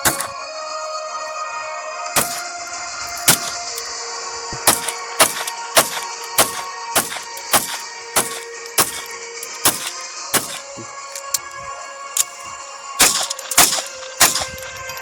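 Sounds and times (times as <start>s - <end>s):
pistol shots: 0.0s - 0.4s, 2.2s - 11.4s, 13.0s - 14.7s
background music: 0.0s - 15.0s.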